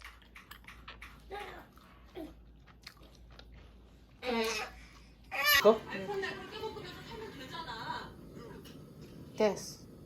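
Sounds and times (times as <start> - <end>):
mouth clicks and smacks: 0.0 - 1.8.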